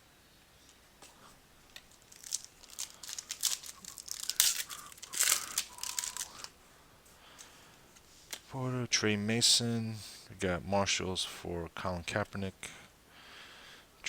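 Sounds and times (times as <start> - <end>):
foil wrapper tearing and crinkling: 1.7 - 6.5.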